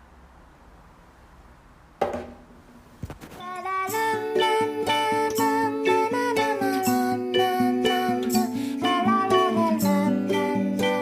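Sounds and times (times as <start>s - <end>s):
sharp thump: 2.0s - 3.3s
tune with plucked tinkling notes: 3.9s - 11.0s.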